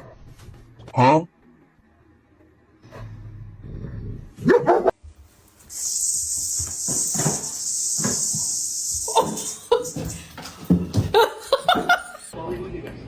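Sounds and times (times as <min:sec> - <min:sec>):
steady hiss: 0:05.2 - 0:12.3
dog whining: 0:05.6 - 0:12.3
dog barking and yelping: 0:06.4 - 0:12.3.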